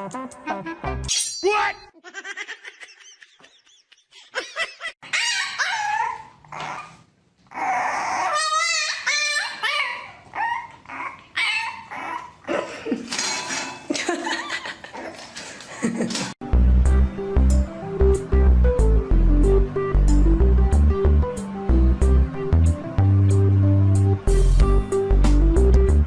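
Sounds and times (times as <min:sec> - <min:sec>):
dog whining and barking: 0:05.0 - 0:12.5.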